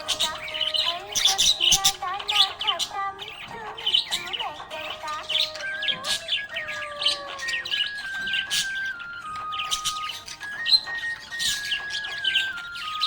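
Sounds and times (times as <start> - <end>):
budgerigars chirping and warbling: 0.0 - 13.0
melodic tune with held notes: 0.0 - 13.0.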